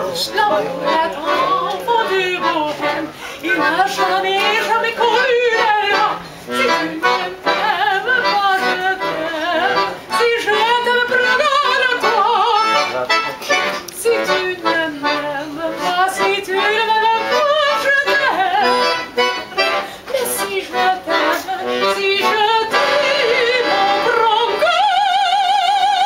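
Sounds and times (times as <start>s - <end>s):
operatic voice singing with vibrato: 0.0s - 12.8s, 14.0s - 26.0s.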